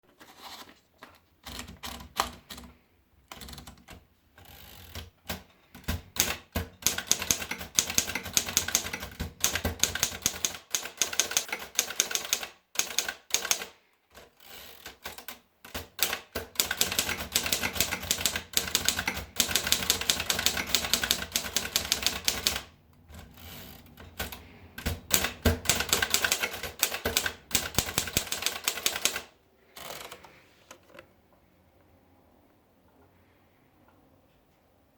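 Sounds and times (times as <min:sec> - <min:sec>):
typewriter key strikes: 0:24.1 - 0:29.2.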